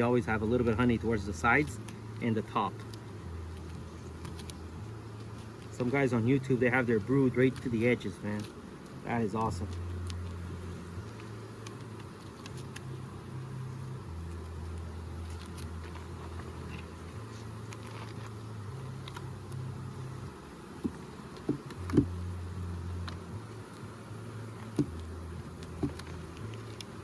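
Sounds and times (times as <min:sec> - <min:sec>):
bees buzzing: 0:00.0 - 0:27.0
sharp clicks and knocks: 0:24.6 - 0:26.9.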